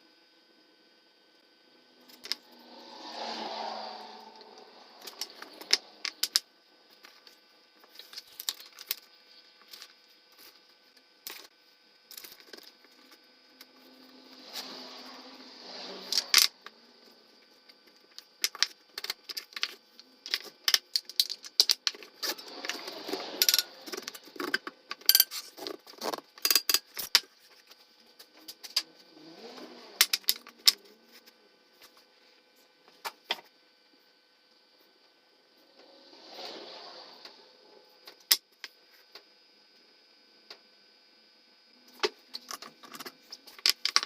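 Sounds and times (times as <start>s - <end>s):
wooden pieces and tools clicking: 18.4s - 27.3s.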